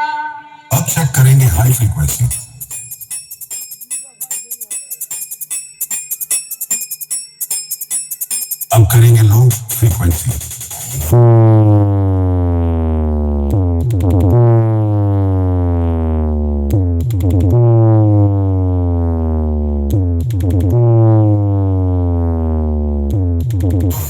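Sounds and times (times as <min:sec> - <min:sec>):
deep synthesizer bass notes sliding down: 0:11.0 - 0:24.0.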